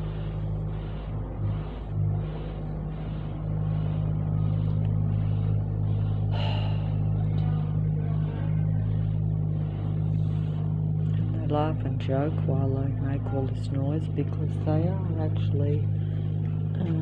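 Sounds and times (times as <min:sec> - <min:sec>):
faint repeating pulse: 0:00.0 - 0:17.0
low mechanical hum: 0:00.0 - 0:17.0.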